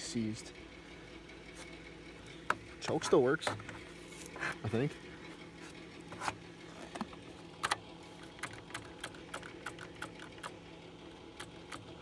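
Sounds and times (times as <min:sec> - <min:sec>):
light clicks and metallic rattles: 0:01.4 - 0:10.6.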